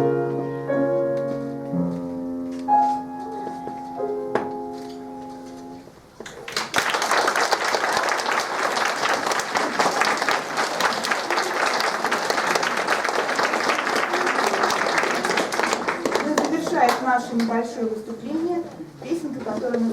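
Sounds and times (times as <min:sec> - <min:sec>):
audience applauding: 0:06.2 - 0:17.1.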